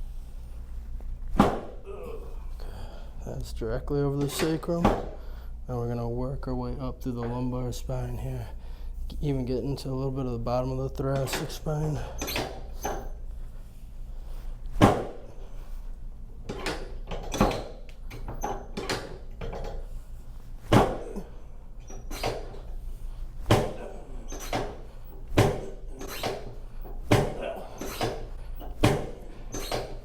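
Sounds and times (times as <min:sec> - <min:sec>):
sharp knocks and cracks of back: 0:01.3 - 0:01.8, 0:04.8 - 0:05.2, 0:14.7 - 0:15.3, 0:20.6 - 0:21.3, 0:23.4 - 0:30.0.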